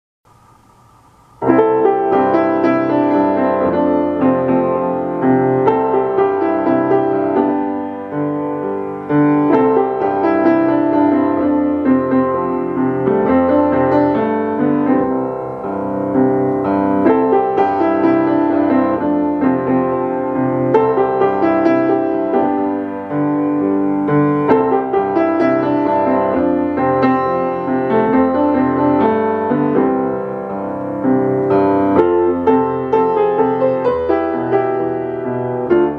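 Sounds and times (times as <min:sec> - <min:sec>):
piano music: 0:01.3 - 0:35.9.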